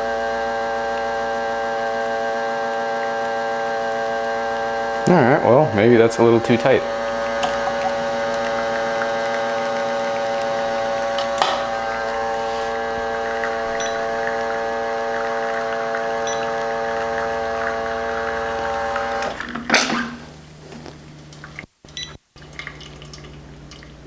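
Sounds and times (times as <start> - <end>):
espresso machine pump humming: 0.0 - 24.0.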